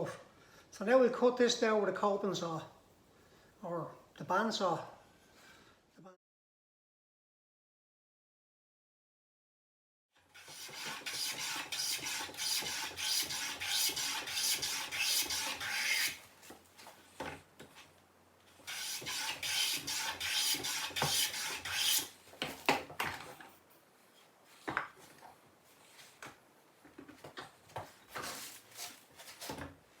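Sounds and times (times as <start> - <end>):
hand tool rasping on wood: 10.4 - 16.2, 18.7 - 22.1.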